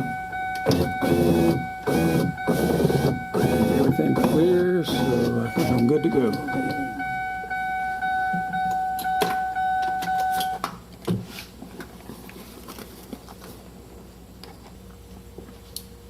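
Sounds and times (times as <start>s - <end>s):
power window motor whine: 0.0s - 7.3s.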